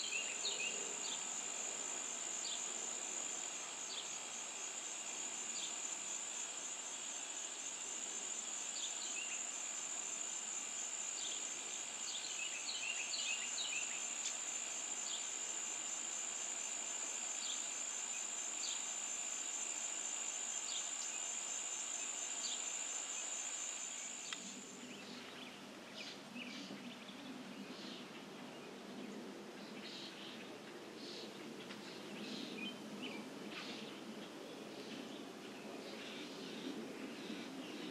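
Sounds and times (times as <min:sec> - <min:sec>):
high insect trill: 0:00.0 - 0:27.0.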